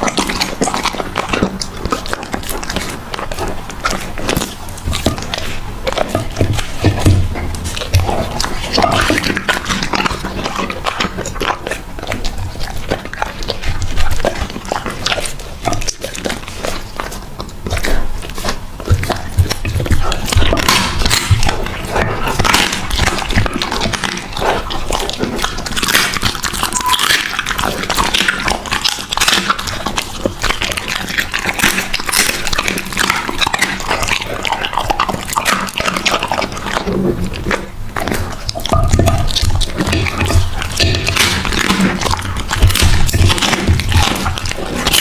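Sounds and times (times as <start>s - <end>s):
dog chewing and crunching food: 0.0s - 45.0s.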